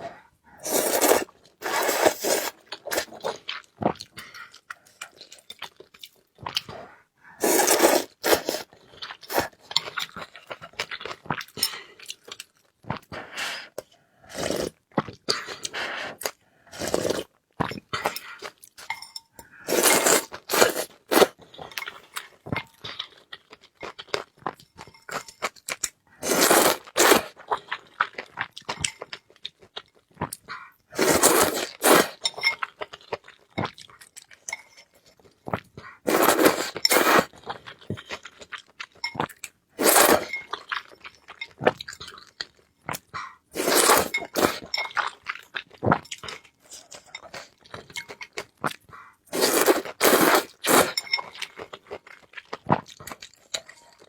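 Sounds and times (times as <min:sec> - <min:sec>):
crunchy biting and chewing: 0:00.6 - 0:03.4, 0:07.4 - 0:10.2, 0:19.6 - 0:21.4, 0:26.2 - 0:27.5, 0:31.0 - 0:32.2, 0:36.1 - 0:37.4, 0:39.8 - 0:40.4, 0:43.6 - 0:44.7, 0:49.3 - 0:51.1.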